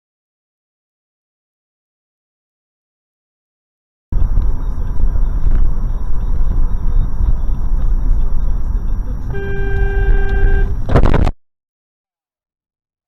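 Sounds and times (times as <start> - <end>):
car road and engine rumble: 4.2 - 11.4
car horn: 9.2 - 11.3.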